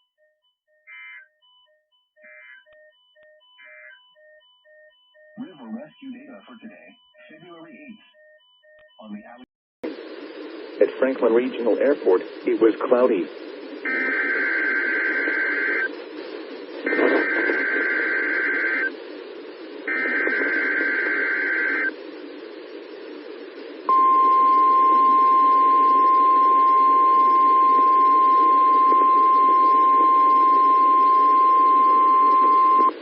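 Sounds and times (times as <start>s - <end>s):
single-pitch warning alarm tone: 0.0s - 9.4s, 23.9s - 32.9s
radio hiss: 5.4s - 8.0s, 9.8s - 33.0s.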